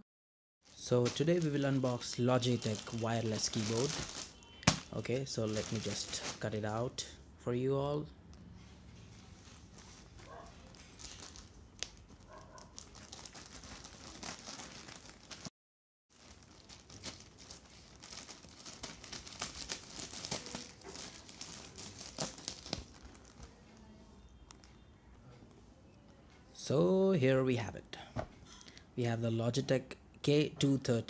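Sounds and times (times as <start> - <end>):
packaging crinkling and tearing: 0.7 - 6.5, 9.8 - 15.5, 16.2 - 23.6.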